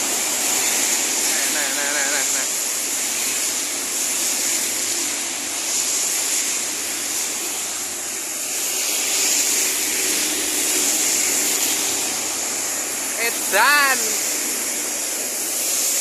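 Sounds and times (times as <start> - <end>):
rain hissing: 0.0 - 16.0
tyres on wet road: 0.0 - 16.0.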